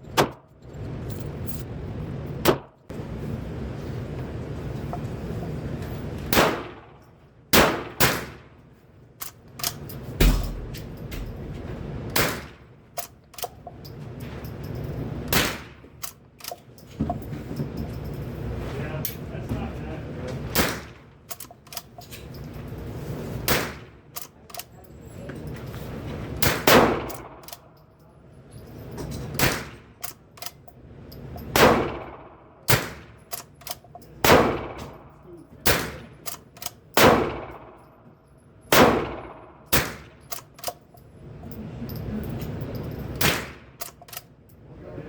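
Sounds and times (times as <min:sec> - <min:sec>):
rifle shots with ringing tail: 0:06.3 - 0:08.6, 0:10.2 - 0:11.5, 0:12.1 - 0:12.7, 0:15.3 - 0:15.9, 0:23.4 - 0:24.0, 0:26.4 - 0:27.8, 0:29.4 - 0:30.0, 0:31.4 - 0:33.4, 0:34.2 - 0:36.4, 0:37.0 - 0:38.0, 0:38.7 - 0:40.3, 0:43.1 - 0:43.9
rifle lever clicks: 0:21.3 - 0:22.0, 0:24.1 - 0:24.7, 0:30.0 - 0:30.7, 0:33.3 - 0:34.0, 0:36.2 - 0:36.8, 0:40.3 - 0:40.8, 0:43.8 - 0:44.3.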